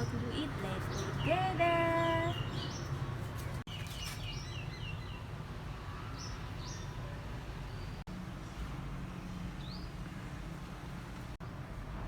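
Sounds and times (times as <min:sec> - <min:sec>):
small birds chirping: 0:00.0 - 0:05.3.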